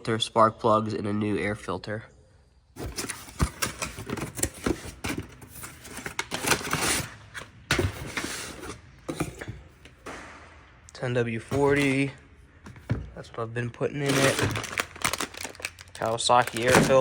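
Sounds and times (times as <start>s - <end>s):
packaging crinkling: 2.8s - 7.2s, 14.0s - 17.0s
parts clattering and knocking: 2.8s - 10.4s, 11.4s - 13.4s, 14.0s - 17.0s.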